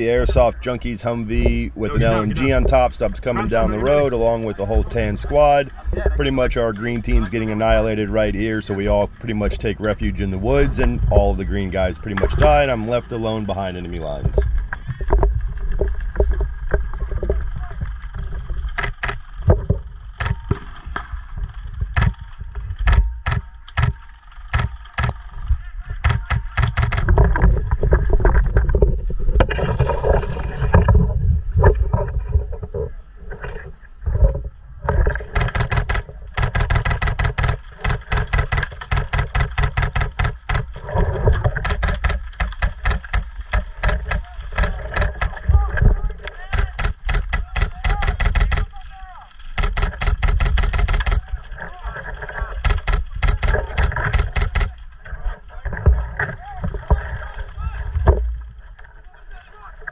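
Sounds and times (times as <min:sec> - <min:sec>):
airsoft gun shots: 0:49.6 - 0:51.2.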